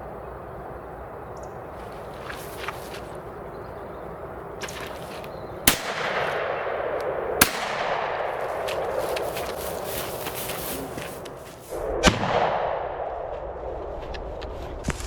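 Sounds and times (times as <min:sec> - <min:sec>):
shotgun shots with echo: 0:05.6 - 0:09.1.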